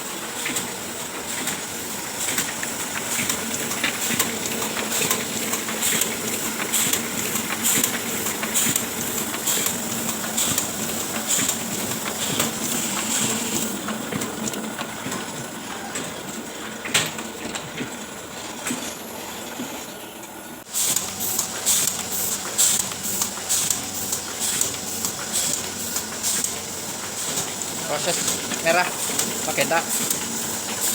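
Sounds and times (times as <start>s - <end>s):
printing press clattering: 0.0s - 19.8s, 20.6s - 30.9s.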